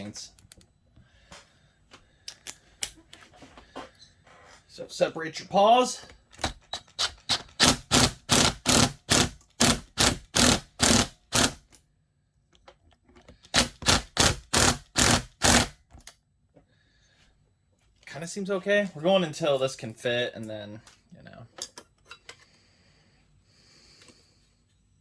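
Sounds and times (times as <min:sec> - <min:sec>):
ratchet wrench clicking: 0:07.5 - 0:11.6, 0:13.5 - 0:15.8.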